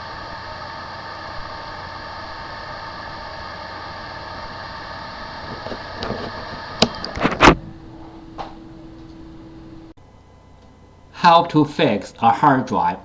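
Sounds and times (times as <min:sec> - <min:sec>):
hard drive whirring: 0:00.0 - 0:11.2
hard drive clicks and knocks: 0:05.4 - 0:08.6.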